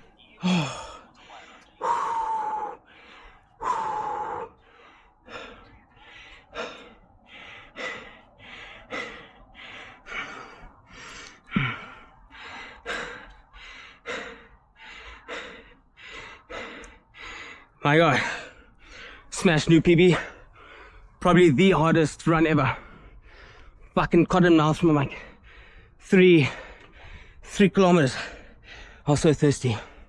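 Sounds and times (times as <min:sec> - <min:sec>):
man panting: 0:00.0 - 0:30.0
man grunting: 0:00.4 - 0:01.0.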